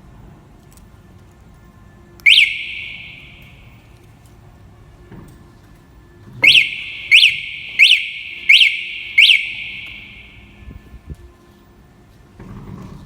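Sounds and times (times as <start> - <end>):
alarm siren chirps: 2.3 - 3.8, 6.4 - 10.6.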